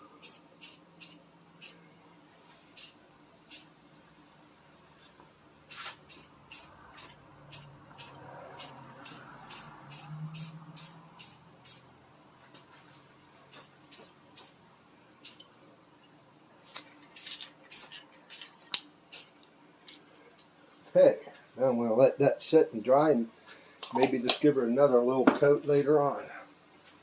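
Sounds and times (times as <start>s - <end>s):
spray paint can hissing: 0.0s - 1.8s, 2.8s - 3.7s, 5.7s - 11.8s, 13.5s - 14.6s, 15.2s - 15.4s, 16.7s - 18.5s, 19.1s - 19.3s.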